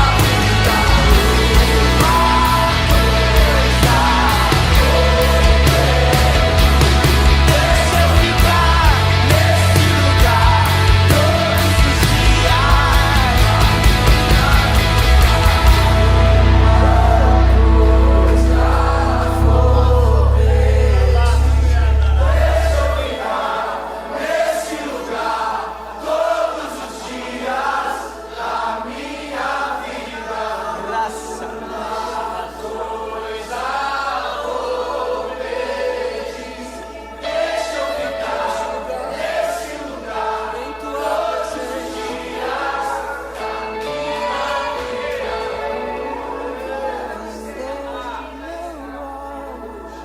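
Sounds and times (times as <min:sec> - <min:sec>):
choir singing gospel: 0:00.0 - 0:50.0
deep sustained bass note: 0:11.8 - 0:23.1.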